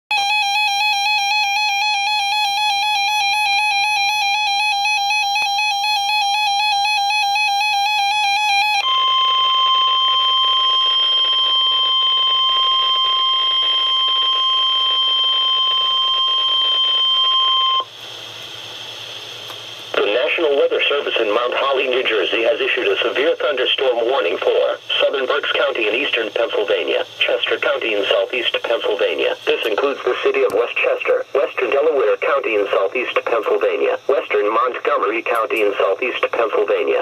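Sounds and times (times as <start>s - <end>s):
warbling electronic alarm tone: 0.1s - 17.9s
steady warning alarm tone: 0.1s - 37.0s.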